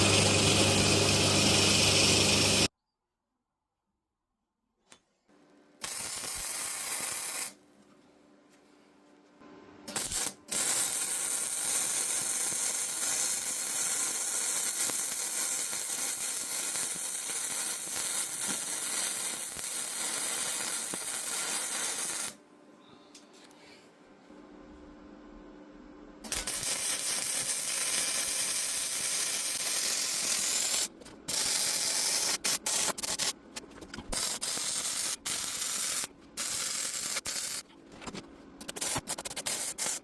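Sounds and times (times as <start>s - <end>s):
electric arc welding crackle: 0.0s - 2.7s, 5.8s - 7.6s, 9.9s - 22.4s, 26.3s - 33.4s, 34.1s - 37.6s, 38.6s - 40.0s.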